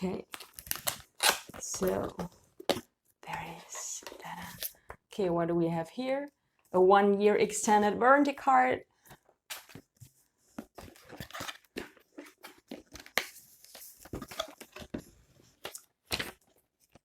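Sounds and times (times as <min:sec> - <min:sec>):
paper and cardboard rustling: 0:09.6 - 0:17.0.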